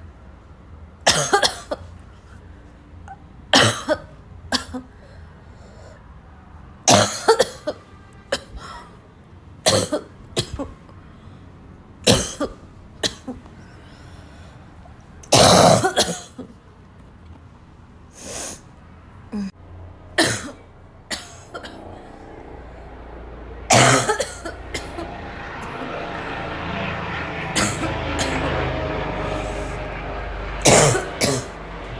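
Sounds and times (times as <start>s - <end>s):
person coughing harshly: 1.1s - 1.9s, 3.5s - 5.0s, 6.9s - 8.9s, 9.7s - 10.8s, 12.0s - 13.4s, 15.3s - 16.6s, 20.2s - 22.2s, 23.7s - 25.2s, 27.6s - 28.6s, 30.6s - 31.6s.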